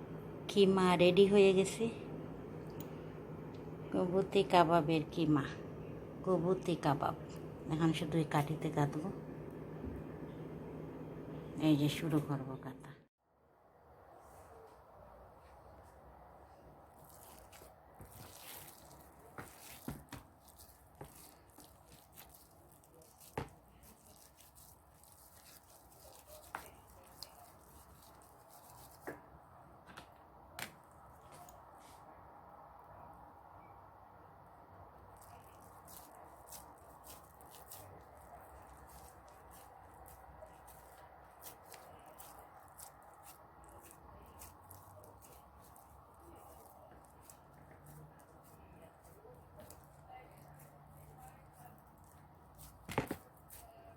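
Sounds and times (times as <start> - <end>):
low steady hum: 0.0 - 53.9
minced meat squishing by hand: 15.9 - 30.0, 35.0 - 53.9.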